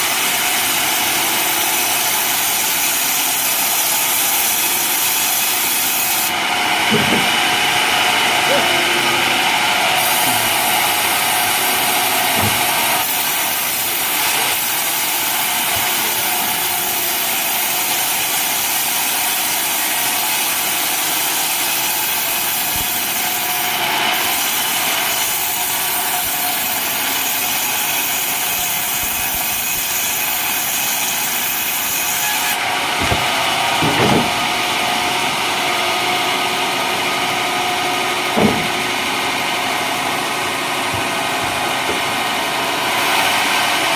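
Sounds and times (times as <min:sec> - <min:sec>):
saw blade cutting wood: 0:00.0 - 0:43.9
brief knocks: 0:38.4 - 0:38.8.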